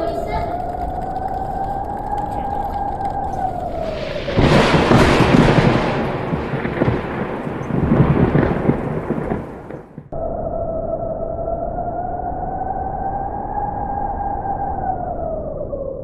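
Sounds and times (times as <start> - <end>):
thunder rumbling and crackling: 0.0 - 12.8.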